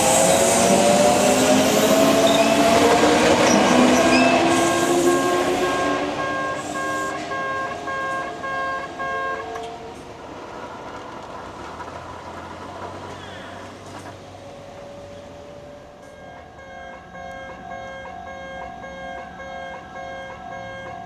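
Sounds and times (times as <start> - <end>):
electric train motor whine: 0.0 - 21.0
level crossing warning bell: 2.1 - 10.2, 14.7 - 21.0.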